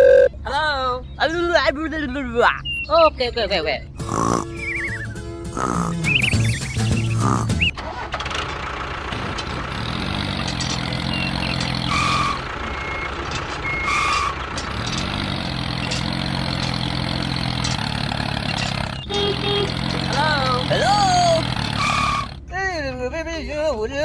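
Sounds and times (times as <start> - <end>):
short beeps: 2.6 - 3.0, 4.5 - 5.3, 6.0 - 7.8
vehicle engine running: 3.9 - 22.5.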